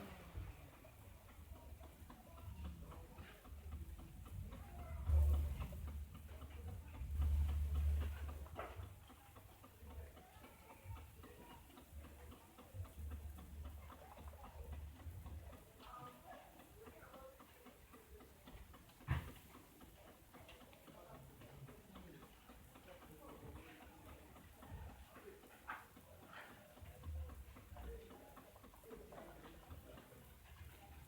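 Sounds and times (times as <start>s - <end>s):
car engine idling with ticking: 0.0s - 16.5s.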